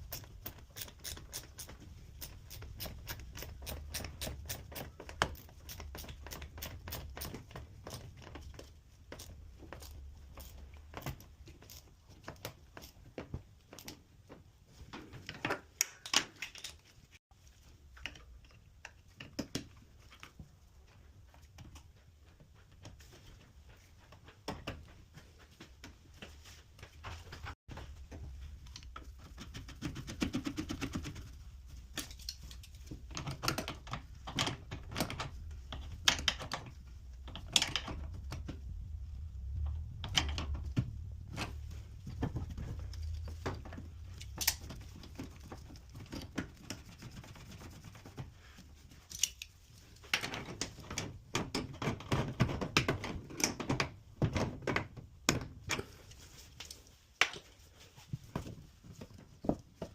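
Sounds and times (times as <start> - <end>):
low hum: 36.7 - 45.0.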